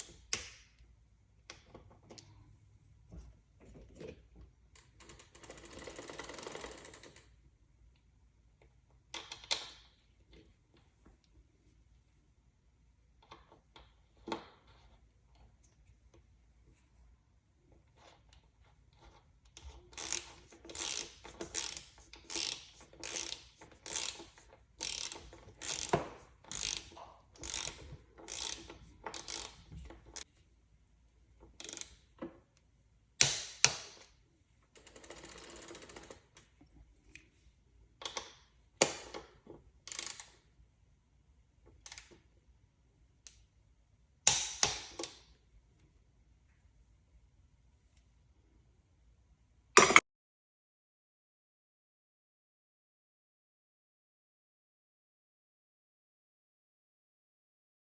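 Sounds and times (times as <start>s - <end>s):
ratchet wrench pawl clicks: 4.8s - 7.2s, 19.6s - 30.2s, 31.6s - 32.0s, 34.8s - 36.5s, 39.9s - 40.4s, 41.8s - 42.1s.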